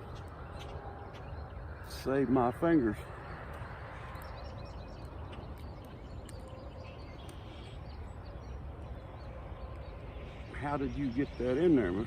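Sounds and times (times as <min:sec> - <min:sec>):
low wind rumble: 0:00.0 - 0:12.0
bird chirps: 0:03.1 - 0:12.0.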